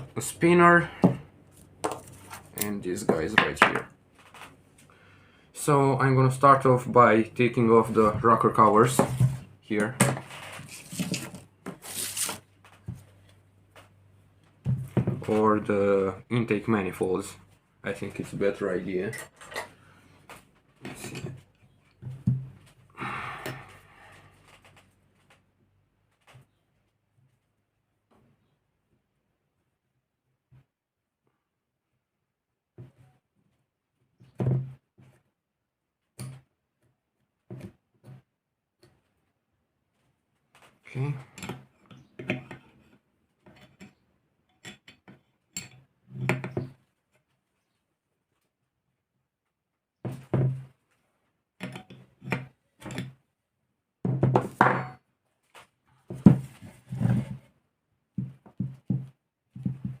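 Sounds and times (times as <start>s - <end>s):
metal parts and tools clunking: 19.0s - 19.8s.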